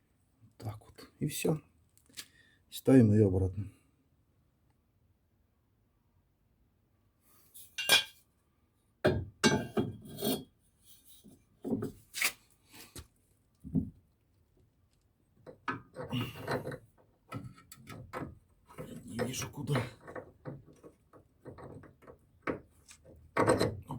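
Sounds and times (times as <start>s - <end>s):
metal tools clinking and scraping: 7.6s - 8.2s.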